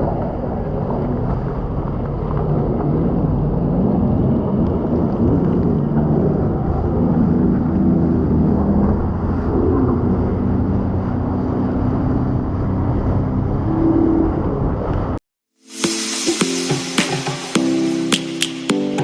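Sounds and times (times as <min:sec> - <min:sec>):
jet ski engine running: 0:00.0 - 0:13.4
rushing low rumble: 0:00.0 - 0:15.2.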